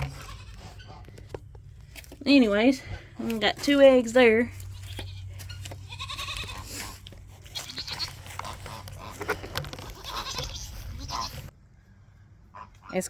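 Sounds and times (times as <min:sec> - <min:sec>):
goats bleating: 0:00.0 - 0:00.8, 0:04.6 - 0:11.5
rustling: 0:00.0 - 0:11.5.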